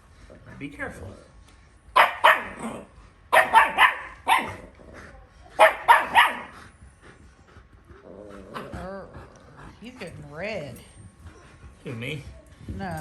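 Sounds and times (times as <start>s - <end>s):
dog barking excitedly: 1.9s - 4.6s, 5.6s - 6.6s.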